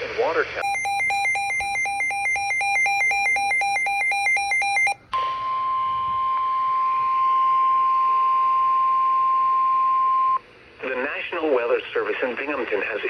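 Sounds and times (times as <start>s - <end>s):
steady alarm tone: 0.6s - 5.0s
warbling data signal: 0.6s - 5.0s.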